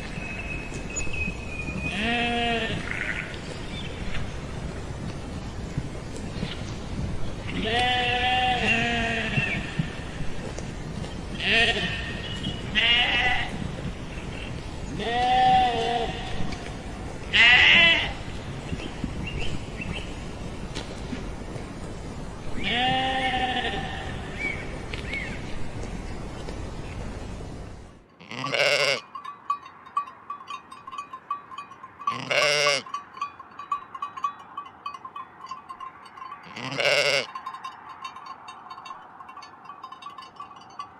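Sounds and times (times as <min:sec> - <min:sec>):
sheep bleating: 0:01.9 - 0:03.3, 0:07.6 - 0:09.6, 0:11.4 - 0:13.5, 0:15.0 - 0:16.4, 0:22.6 - 0:24.2, 0:28.2 - 0:29.0, 0:32.1 - 0:32.9, 0:36.4 - 0:37.3.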